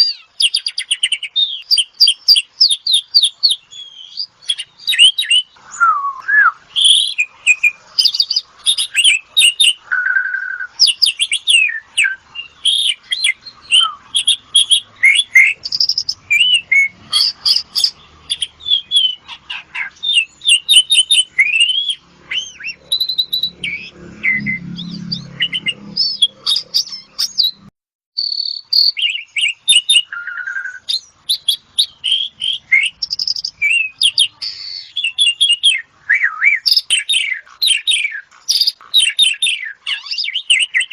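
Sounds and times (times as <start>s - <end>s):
starling singing chirps and whistles: 0.0s - 40.9s.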